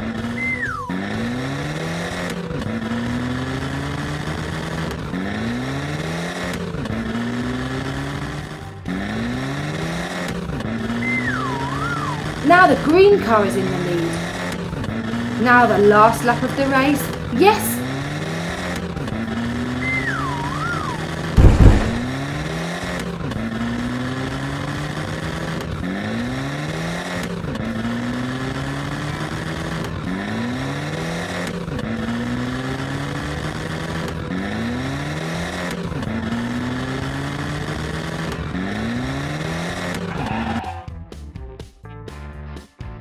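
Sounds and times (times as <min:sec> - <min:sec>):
cartoon racing car engine revving: 0:00.0 - 0:41.2
whistle-like glide: 0:00.3 - 0:01.0, 0:10.9 - 0:12.3, 0:19.7 - 0:21.3
short loud hit: 0:21.4 - 0:22.3.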